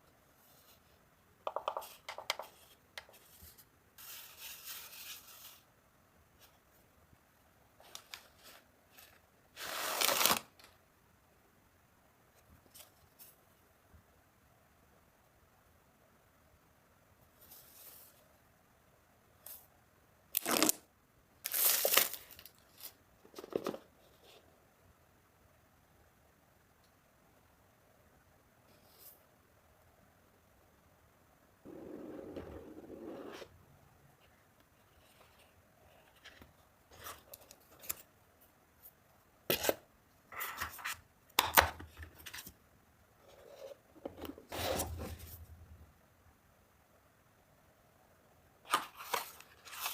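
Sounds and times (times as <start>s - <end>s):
packaging being torn and crinkled: 21.4s - 22.7s.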